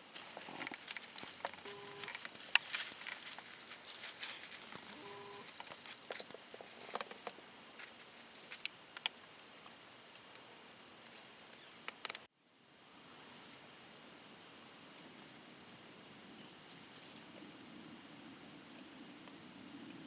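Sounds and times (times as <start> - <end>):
light rustling and ticks: 0.0 - 12.3
faint squeaky tones: 1.6 - 2.8, 4.2 - 5.6.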